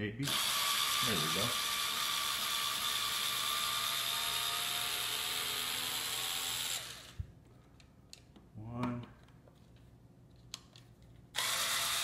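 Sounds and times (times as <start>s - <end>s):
cordless drill running: 0.2s - 7.2s, 11.4s - 12.0s.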